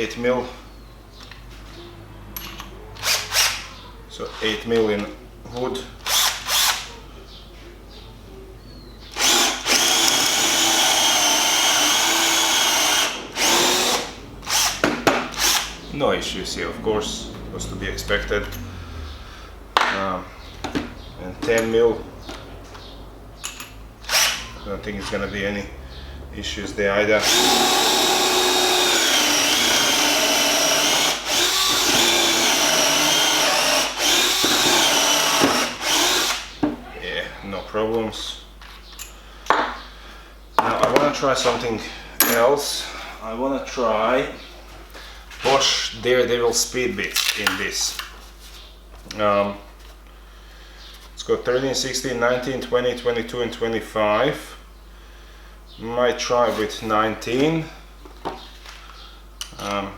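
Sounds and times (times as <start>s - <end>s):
cordless drill boring into wood: 3.0s - 3.6s, 6.0s - 6.9s, 9.1s - 15.8s, 24.0s - 24.5s, 27.2s - 36.6s.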